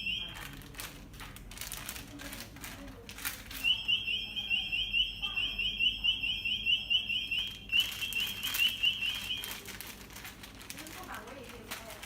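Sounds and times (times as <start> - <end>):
security gate alarm warbling: 0.0 - 0.4, 3.6 - 9.6.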